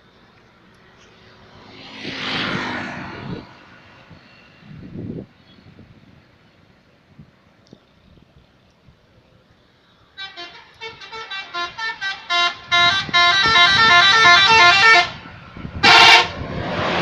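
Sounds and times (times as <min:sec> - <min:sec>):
musical air horn melody: 0:10.2 - 0:16.4
loud horn blast: 0:10.2 - 0:17.0.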